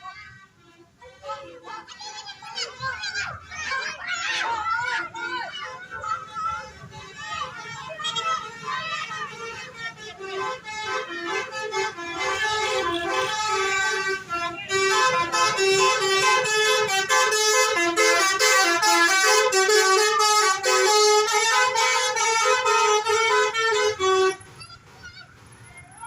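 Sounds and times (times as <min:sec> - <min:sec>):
multi-tone bus horn melody: 0:05.1 - 0:24.5.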